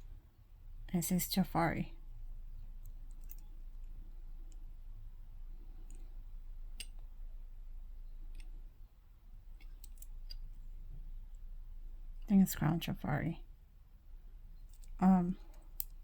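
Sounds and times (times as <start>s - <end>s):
steady low hum: 0.0s - 16.0s
jewelry clicking and tapping: 5.7s - 7.3s, 9.5s - 10.7s.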